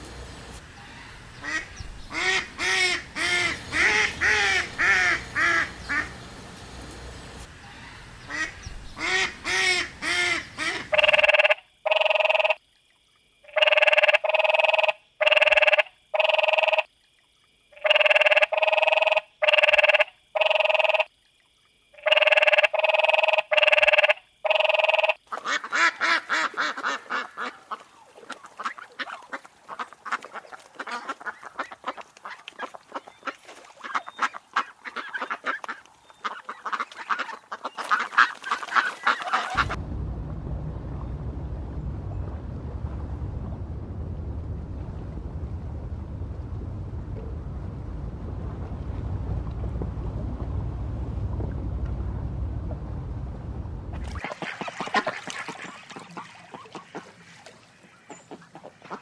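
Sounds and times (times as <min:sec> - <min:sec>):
waterfowl calling: 0:00.0 - 0:12.6, 0:22.0 - 0:39.8, 0:54.0 - 0:59.0
fast chattering calls: 0:00.8 - 0:06.6, 0:07.6 - 0:11.0.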